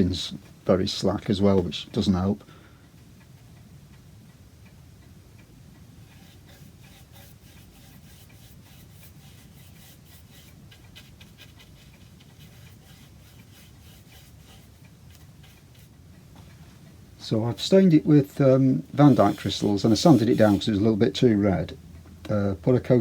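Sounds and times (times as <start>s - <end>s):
low steady hum: 0.0s - 23.0s
small ticks: 5.0s - 17.0s
light rubbing: 6.0s - 21.2s.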